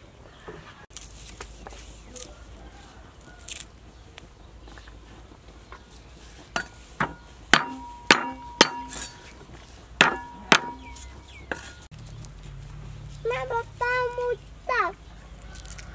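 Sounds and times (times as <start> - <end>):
hard knocks with ringing tone: 6.6 - 9.2, 10.0 - 11.6.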